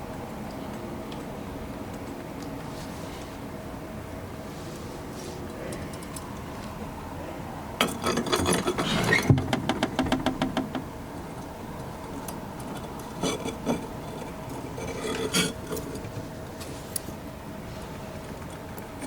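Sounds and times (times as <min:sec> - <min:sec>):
metal tools clicking and rattling: 0:07.8 - 0:09.3, 0:12.6 - 0:16.1.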